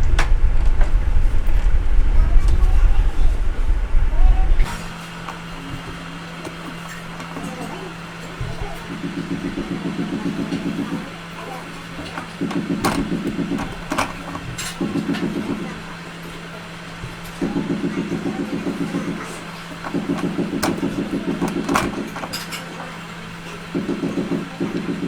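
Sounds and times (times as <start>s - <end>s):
workshop machine humming: 0.0s - 25.0s
sharp clicks and knocks: 12.0s - 15.7s, 17.1s - 22.7s.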